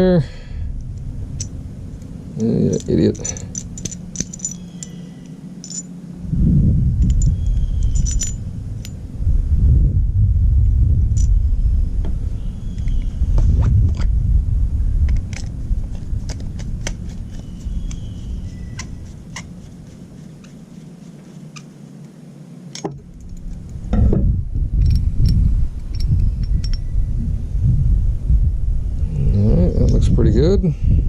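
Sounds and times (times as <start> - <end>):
low uneven rumble: 0.0 - 31.0
small metal parts clinking: 0.8 - 6.0, 7.0 - 9.0, 15.1 - 19.7, 24.8 - 26.9.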